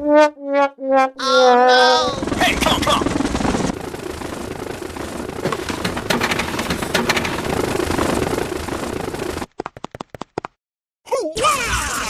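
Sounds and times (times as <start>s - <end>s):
small motor running: 2.2s - 9.5s
rattling and clicking: 3.1s - 10.2s.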